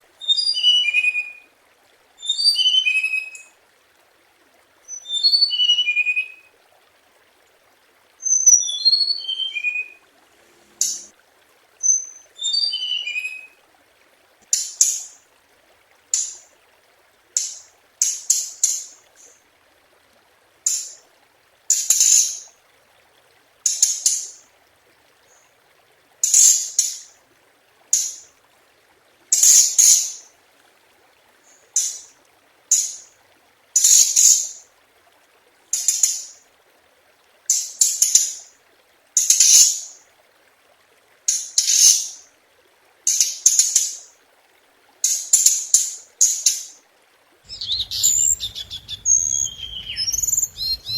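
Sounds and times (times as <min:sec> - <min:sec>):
songbird whistling: 0:04.9 - 0:06.4, 0:08.2 - 0:10.0, 0:11.8 - 0:13.5, 0:47.5 - 0:50.9.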